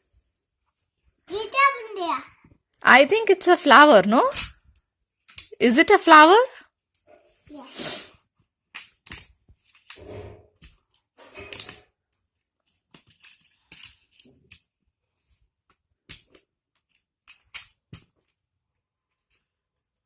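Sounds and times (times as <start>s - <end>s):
magnetic blocks clicking together: 16.0s - 18.0s.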